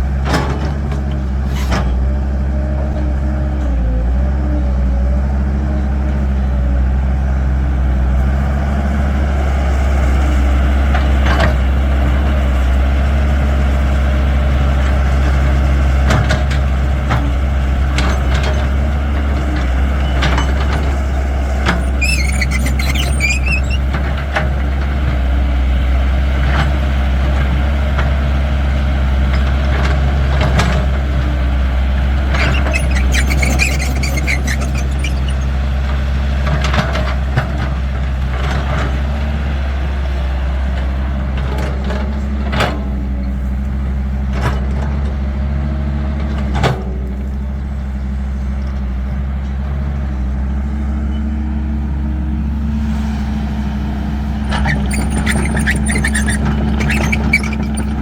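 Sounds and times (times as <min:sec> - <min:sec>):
excavator diesel engine running: 0:00.0 - 0:58.0
wavering high squeal: 0:21.8 - 0:23.9, 0:32.4 - 0:35.6
knocks and clanks: 0:32.3 - 0:35.6.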